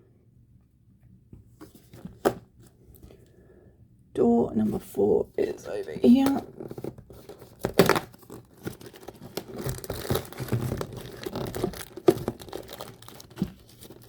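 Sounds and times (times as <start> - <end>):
rustling of cardboard and packaging: 1.4 - 3.2, 5.4 - 14.0
cardboard tearing: 6.3 - 14.0.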